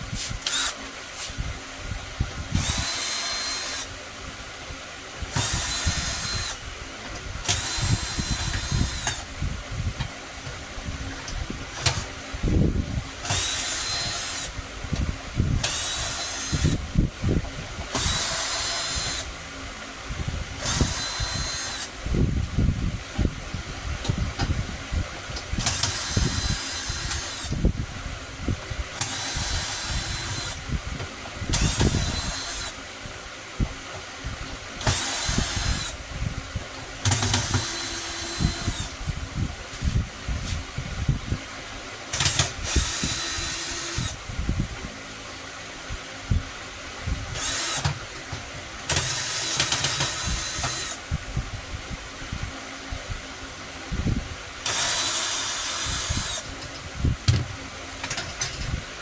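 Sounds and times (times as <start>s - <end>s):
handheld power tool whining: 0.1s - 1.4s, 2.5s - 4.0s, 5.3s - 9.4s, 10.0s - 19.5s, 20.6s - 22.6s, 25.3s - 27.8s, 28.9s - 32.9s, 34.8s - 36.2s, 36.8s - 39.2s, 42.1s - 44.3s, 47.3s - 51.2s, 54.6s - 58.8s.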